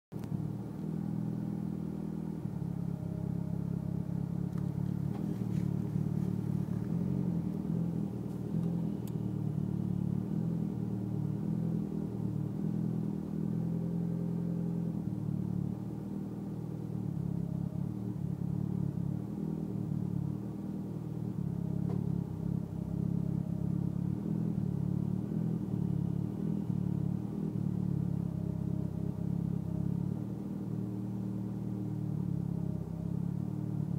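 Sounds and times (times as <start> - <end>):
car engine idling roughly: 4.4 - 10.0.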